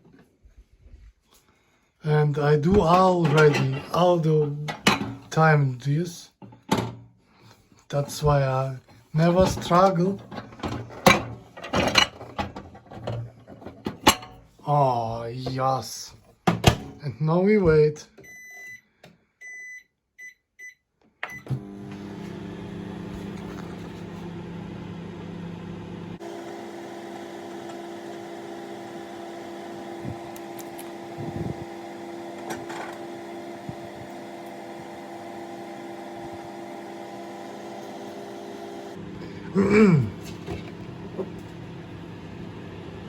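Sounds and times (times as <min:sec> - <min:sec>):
microwave keypad beeps: 0:18.2 - 0:18.8, 0:19.4 - 0:21.6
microwave running hum: 0:21.2 - 0:43.0.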